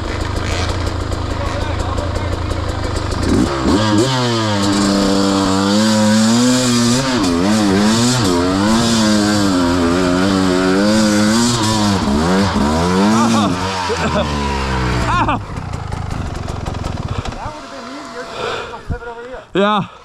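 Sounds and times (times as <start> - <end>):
dirt bike engine revving: 0.0 - 19.3.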